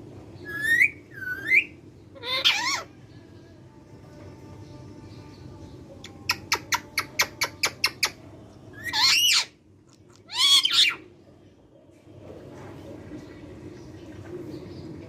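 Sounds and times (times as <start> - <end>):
parakeet squawk: 0.5 - 2.9, 8.8 - 11.0.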